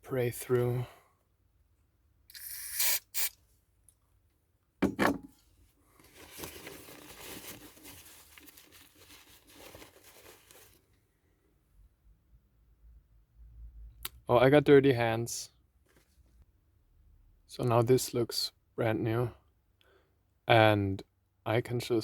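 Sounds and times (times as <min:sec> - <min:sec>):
aerosol can spraying: 0:02.3 - 0:03.4
rustling and rubbing: 0:05.9 - 0:11.0.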